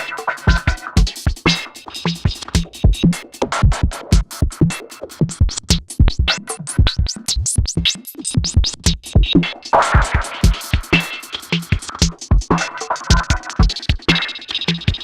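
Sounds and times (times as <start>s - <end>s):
electronic drum machine beat: 0.0s - 15.0s
heavy kick drums: 0.5s - 4.6s, 5.4s - 9.4s, 10.0s - 11.0s, 11.7s - 14.0s
noisy snare hit: 1.5s - 1.8s.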